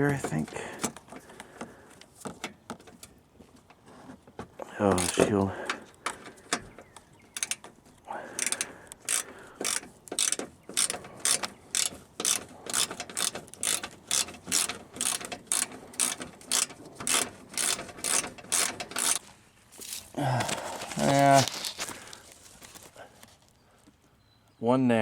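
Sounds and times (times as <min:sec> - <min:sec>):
ratchet clicking: 0:04.9 - 0:05.3, 0:07.3 - 0:07.7, 0:08.4 - 0:19.2.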